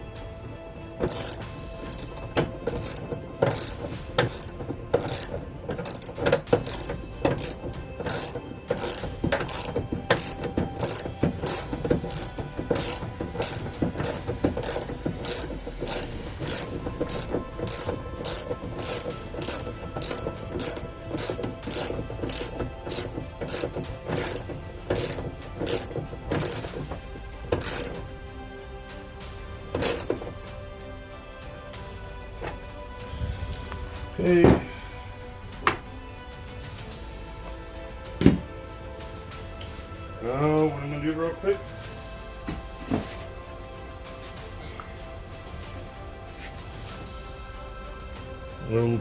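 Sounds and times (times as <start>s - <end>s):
ratchet wrench clicking: 1.0s - 28.0s, 29.7s - 30.4s.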